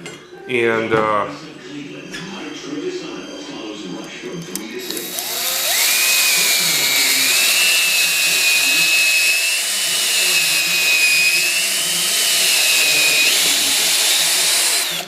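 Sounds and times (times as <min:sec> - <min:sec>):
cordless drill motor whine: 0:04.8 - 0:15.0.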